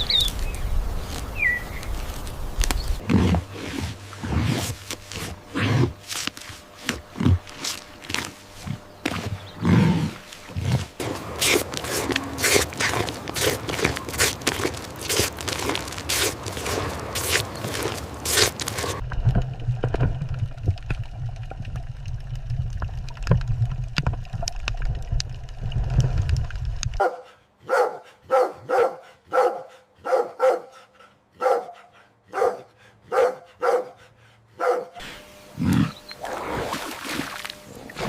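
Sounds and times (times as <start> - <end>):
low rumbling noise: 0.4 - 27.0
dog barking: 27.0 - 35.0.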